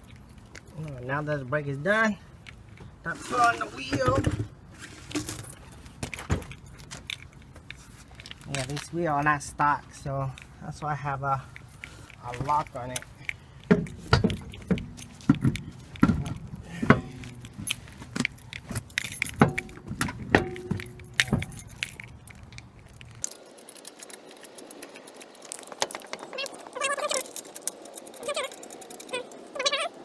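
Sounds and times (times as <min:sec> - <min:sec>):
metallic clinks of lug nuts: 0:11.5 - 0:25.3
short squeaks: 0:26.2 - 0:30.0.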